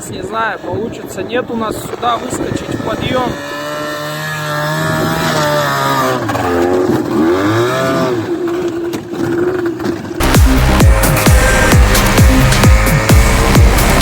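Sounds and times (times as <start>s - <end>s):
snowmobile engine under load: 0.0s - 14.0s
electronic music with beat: 10.2s - 14.0s.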